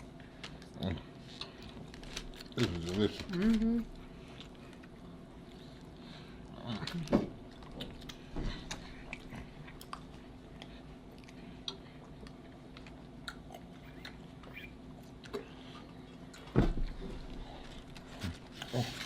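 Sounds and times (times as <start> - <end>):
chewing food: 0.0 - 19.0
wet mouth clicks: 13.2 - 15.5.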